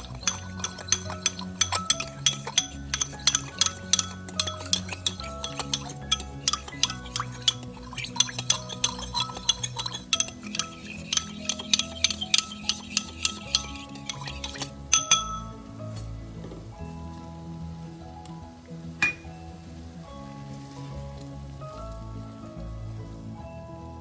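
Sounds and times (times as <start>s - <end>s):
spoon clinking in a pot: 0.0s - 15.6s, 19.0s - 19.4s
background music: 0.0s - 24.0s.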